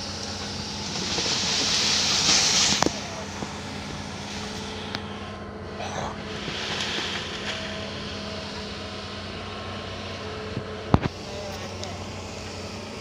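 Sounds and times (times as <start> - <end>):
loud hiss: 0.0 - 4.8
excavator engine running: 0.0 - 13.0.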